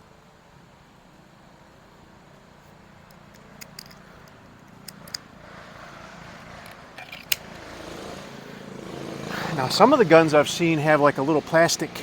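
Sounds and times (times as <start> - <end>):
vehicle passing: 4.7 - 12.0.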